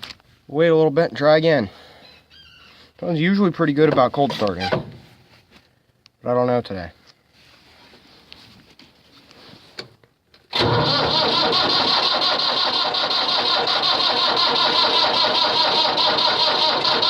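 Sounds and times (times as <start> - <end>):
starter cranking diesel engine: 10.5 - 17.0.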